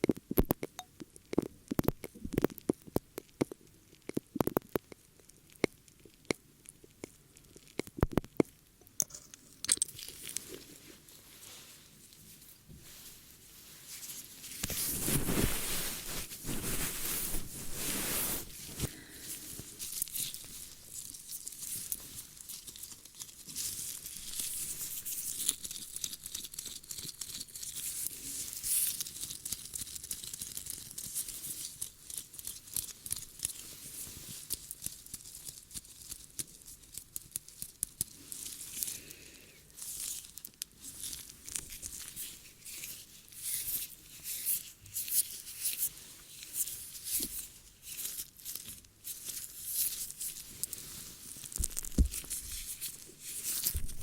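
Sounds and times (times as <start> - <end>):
object scratching on microphone: 14.7 - 18.9, 53.7 - 54.0.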